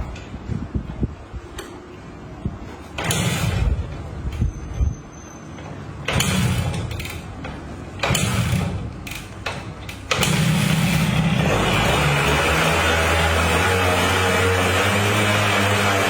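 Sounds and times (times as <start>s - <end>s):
motorcycle kick-starter: 6.0s - 12.4s.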